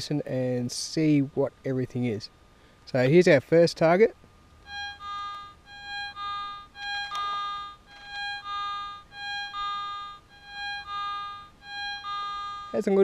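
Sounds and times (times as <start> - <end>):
metal detector two-tone beeps: 4.7 - 13.0.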